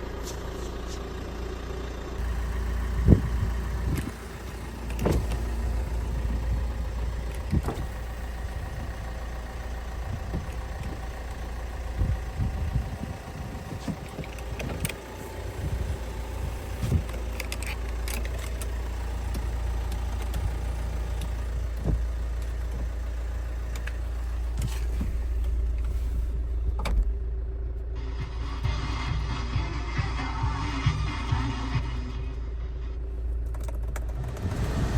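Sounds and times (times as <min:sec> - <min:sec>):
car engine idling: 0:00.0 - 0:34.9
sharp clicks and knocks: 0:13.8 - 0:15.0, 0:33.4 - 0:34.5.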